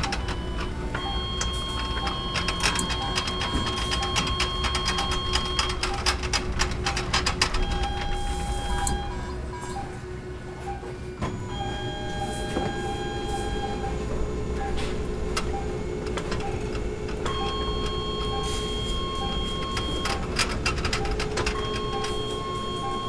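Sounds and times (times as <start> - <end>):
scattered clicks: 0.0 - 9.0, 15.4 - 23.0
constant low hum: 0.0 - 23.0.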